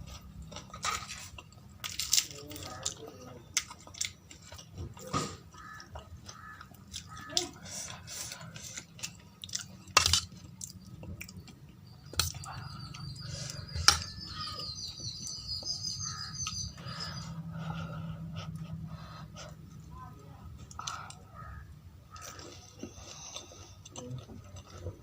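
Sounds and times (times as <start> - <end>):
person chewing food: 0.0 - 19.9, 20.5 - 25.0
bird chirping high notes: 11.9 - 17.4.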